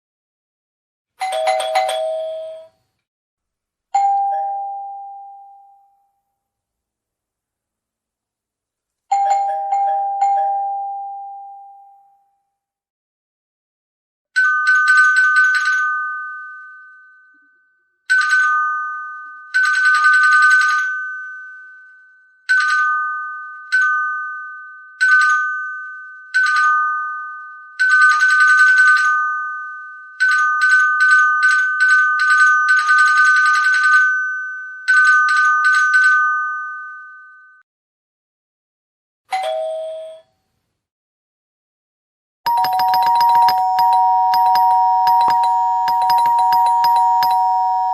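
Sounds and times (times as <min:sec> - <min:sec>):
doorbell ringing: 0:01.2 - 0:02.8, 0:04.0 - 0:06.1, 0:09.1 - 0:11.9, 0:42.5 - 0:47.9
lower-pitched bell ringing: 0:42.5 - 0:47.9.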